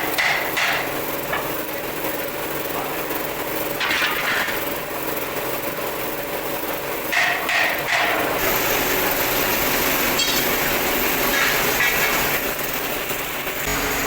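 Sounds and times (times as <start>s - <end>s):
small motor running: 8.0s - 14.0s.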